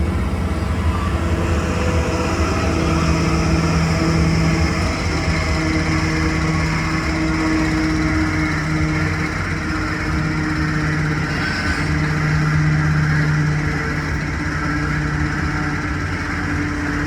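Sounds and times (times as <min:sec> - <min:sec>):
carnival ride mechanical hum: 0:00.0 - 0:17.0.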